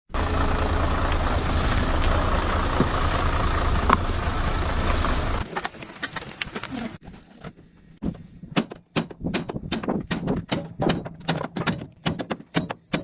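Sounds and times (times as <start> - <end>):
heavy engine rumbling: 0.1 - 7.0
sharp clicks and knocks: 7.4 - 13.0.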